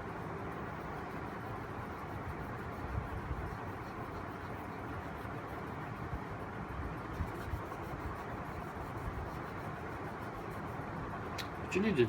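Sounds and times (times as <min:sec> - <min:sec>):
background rumble and hiss: 0:00.0 - 0:12.0.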